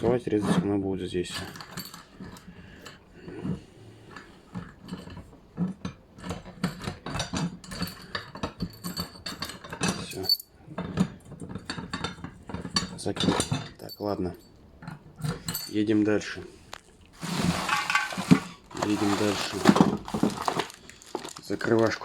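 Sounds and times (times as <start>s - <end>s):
metallic clinks of gate lock: 7.8s - 10.6s.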